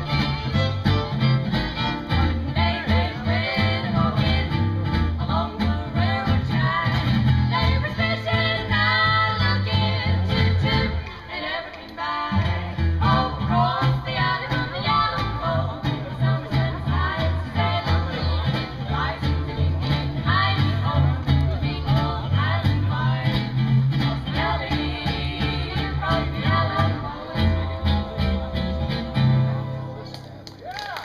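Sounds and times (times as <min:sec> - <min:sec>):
country band playing: 0:00.0 - 0:30.5
person singing: 0:24.0 - 0:29.9.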